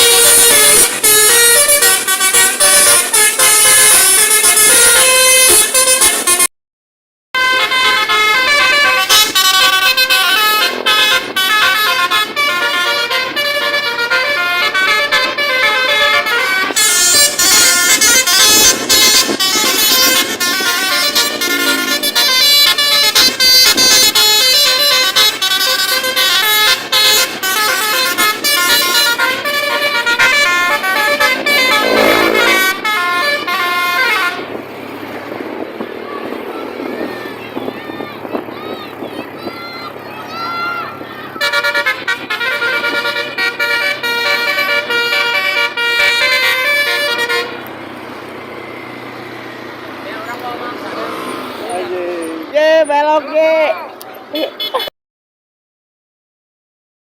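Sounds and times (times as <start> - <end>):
multi-tone air horn tune: 0.0 - 6.5, 7.4 - 34.6, 41.4 - 47.8.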